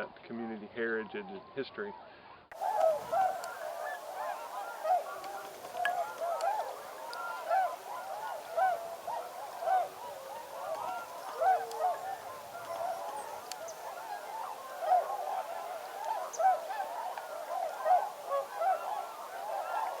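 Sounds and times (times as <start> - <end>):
geese honking: 2.5 - 20.0.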